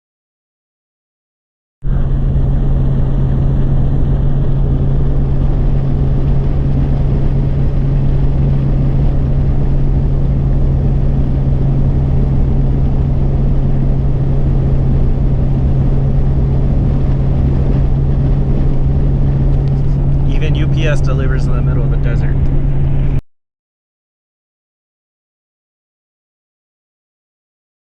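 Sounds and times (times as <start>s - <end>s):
car engine drone: 1.9s - 23.2s
road and wind noise: 1.9s - 23.2s.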